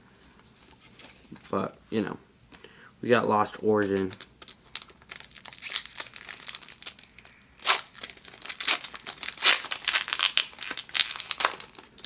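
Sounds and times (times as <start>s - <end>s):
foil wrapper crinkling and tearing: 3.7s - 12.0s.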